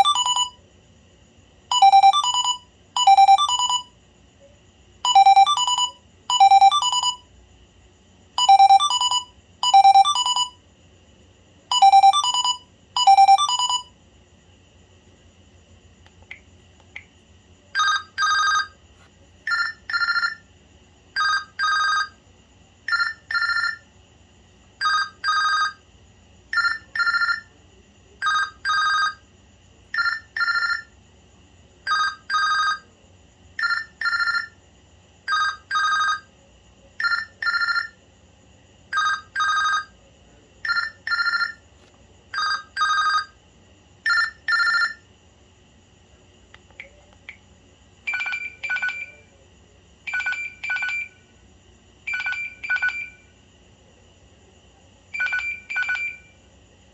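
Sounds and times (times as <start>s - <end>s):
phone ringtone double ring: 0.0s - 0.6s, 1.7s - 3.9s, 5.1s - 7.2s, 8.4s - 10.6s, 11.7s - 13.9s, 17.8s - 18.8s, 19.5s - 20.4s, 21.2s - 22.2s, 22.9s - 23.8s, 30.0s - 30.9s, 33.6s - 34.6s, 37.0s - 38.0s, 39.0s - 39.9s, 40.7s - 41.6s, 44.1s - 45.0s, 48.1s - 49.2s, 50.1s - 51.2s, 52.1s - 53.2s, 55.2s - 56.3s.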